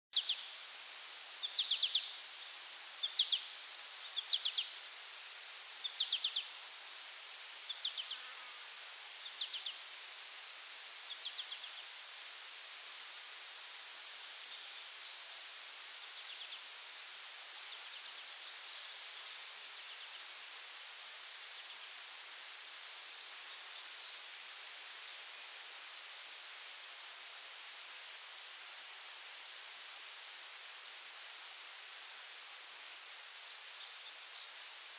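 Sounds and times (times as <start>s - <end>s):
insect short chirps: 0.2s - 6.7s
insect pulsing call: 0.2s - 13.3s.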